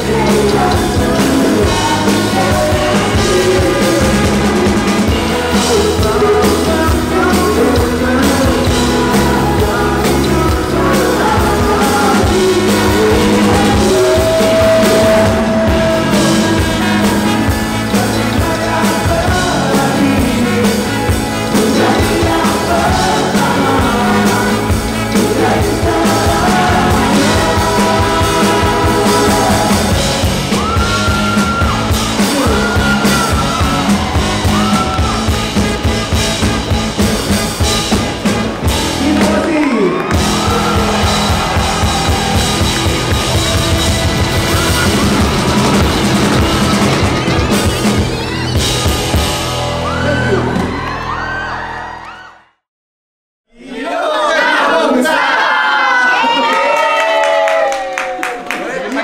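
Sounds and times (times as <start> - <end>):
person singing: 0.0 - 35.8, 38.7 - 48.4
drum and bass beat: 0.0 - 50.9
live band playing: 0.0 - 51.4.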